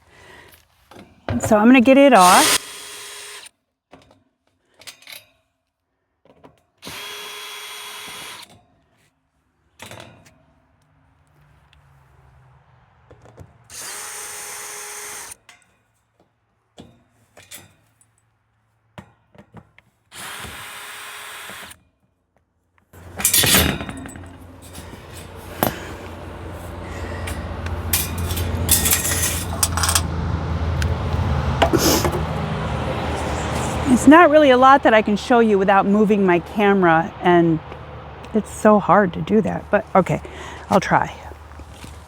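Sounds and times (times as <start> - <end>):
power drill whirring: 2.1 - 3.5, 6.8 - 8.5, 13.7 - 15.4, 20.1 - 21.8
rattling and handling noise: 23.0 - 35.7.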